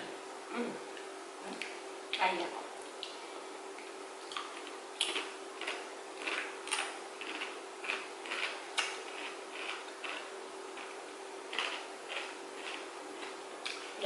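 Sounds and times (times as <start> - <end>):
wet chewing and crunching: 4.2 - 14.0.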